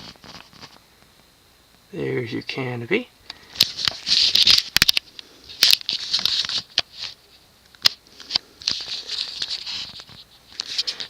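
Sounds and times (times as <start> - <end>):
handling rustles: 3.4 - 7.4.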